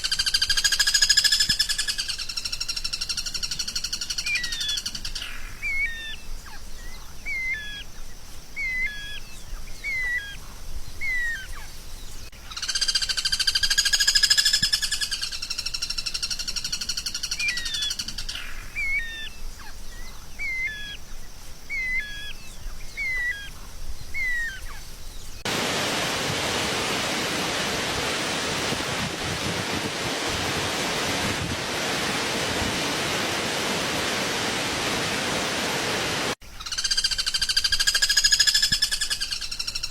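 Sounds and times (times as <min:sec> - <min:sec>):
steady hiss: 0:00.0 - 0:36.6
songbird chirping: 0:00.0 - 0:39.9
loud whistled bird notes: 0:05.6 - 0:07.8, 0:08.6 - 0:10.4, 0:11.0 - 0:16.1, 0:21.7 - 0:25.5.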